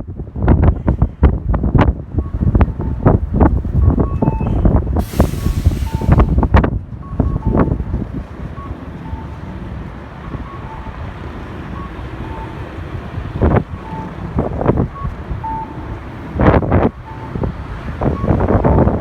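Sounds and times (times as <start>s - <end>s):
wind buffeting microphone: 0.0s - 19.0s
faint short beeps: 4.1s - 4.6s.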